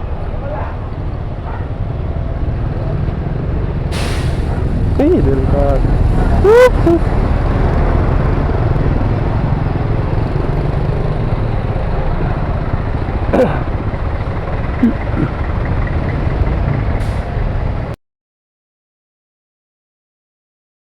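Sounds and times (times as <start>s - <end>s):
wind rumble on microphone: 0.0s - 13.0s.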